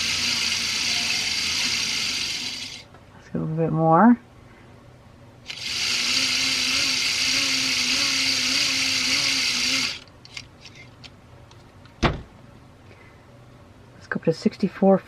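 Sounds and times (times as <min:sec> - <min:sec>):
clockwork camera mechanism whirring: 0:00.0 - 0:02.9, 0:05.4 - 0:10.9.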